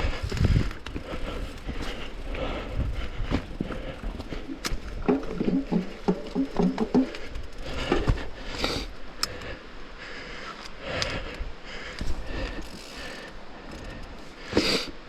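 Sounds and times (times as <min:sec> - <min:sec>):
bike rattling and clicking: 0:00.0 - 0:09.6, 0:10.6 - 0:14.3
bike hitting bumps: 0:02.8 - 0:08.3.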